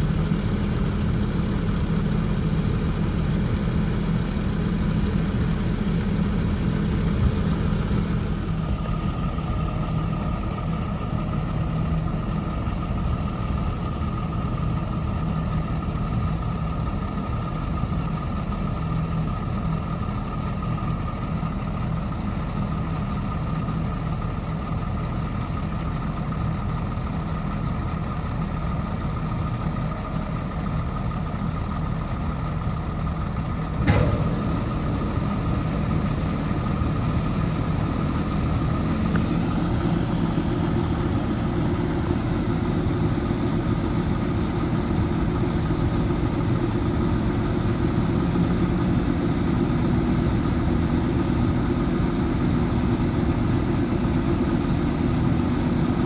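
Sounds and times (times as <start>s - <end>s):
vehicle engine running: 0.0s - 56.0s
faint steady whine: 33.8s - 56.0s.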